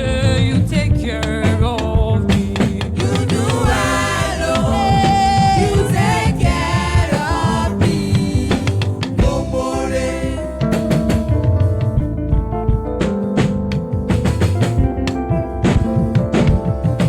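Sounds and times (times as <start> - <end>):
drums steady beat: 0.0 - 17.0
band playing: 2.3 - 17.0
voices singing together: 2.8 - 11.2.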